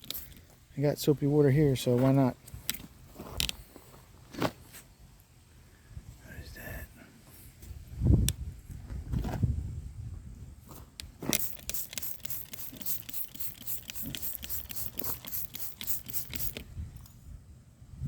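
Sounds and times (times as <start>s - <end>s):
spray bottle hissing sprays: 0.0s - 0.4s, 11.3s - 16.6s.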